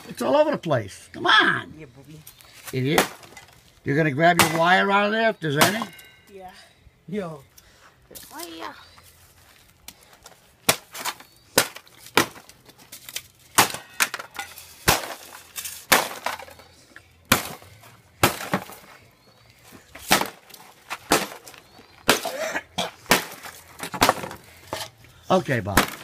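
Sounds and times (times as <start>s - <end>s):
refrigerator being smashed: 4.4s - 4.8s, 10.7s - 12.5s, 13.1s - 16.6s, 17.3s - 17.6s, 18.2s - 18.9s, 20.0s - 24.4s, 25.7s - 26.0s.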